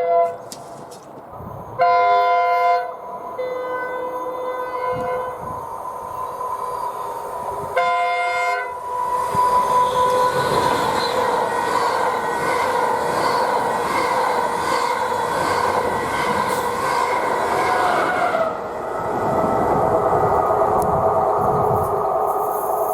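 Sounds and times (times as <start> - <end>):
train horn blasts: 0.0 - 0.4, 1.8 - 5.4, 7.8 - 11.2
passing train rushing: 0.0 - 22.9.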